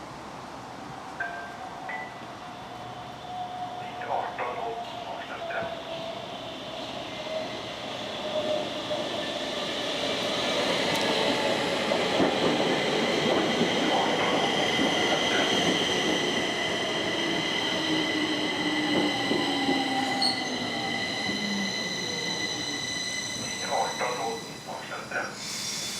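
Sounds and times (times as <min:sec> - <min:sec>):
train rumble: 0:01.7 - 0:25.9
high-pitched wheel squeal: 0:18.6 - 0:24.5.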